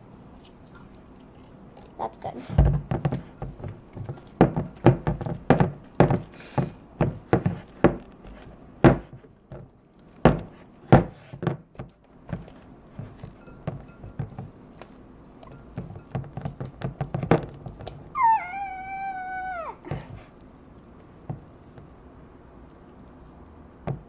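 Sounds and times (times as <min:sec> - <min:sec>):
fork stirring slime: 0:12.4 - 0:16.1
fork knocking against bowl: 0:13.0 - 0:14.5, 0:15.4 - 0:16.7.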